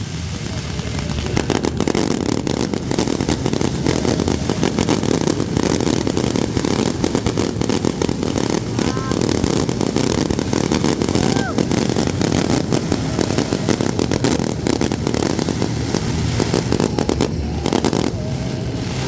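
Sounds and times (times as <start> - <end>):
fireworks crackling and banging: 0.0 - 19.0
rising firework whistles: 0.0 - 19.0
steady rumble: 0.0 - 19.0.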